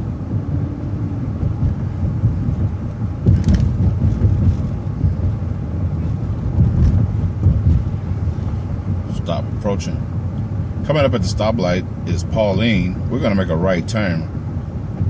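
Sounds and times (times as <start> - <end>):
bus engine rumble: 0.0 - 15.0
brief clatter: 3.2 - 4.7.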